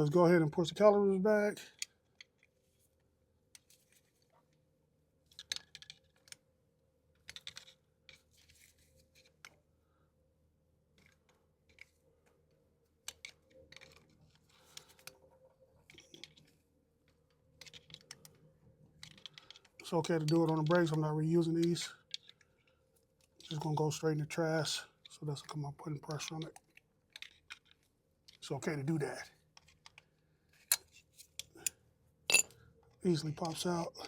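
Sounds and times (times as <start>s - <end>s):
clicks and scrapes of hand tools: 30.6s - 32.6s.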